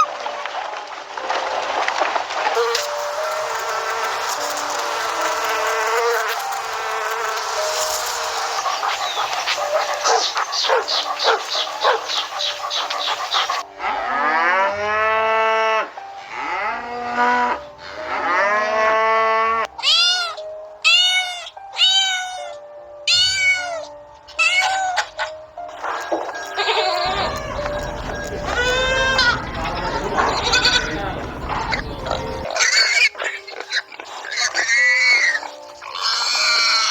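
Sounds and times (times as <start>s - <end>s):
animal chirps: 2.6s - 13.6s, 25.9s - 36.9s
drawn-out animal calls: 2.6s - 14.6s, 24.4s - 36.9s
short high animal calls: 26.6s - 32.5s.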